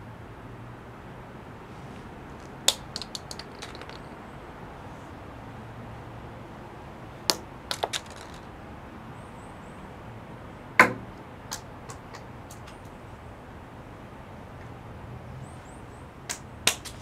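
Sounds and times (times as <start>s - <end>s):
acorns hitting stone paving: 2.0s - 4.4s, 7.3s - 8.6s, 16.3s - 17.0s.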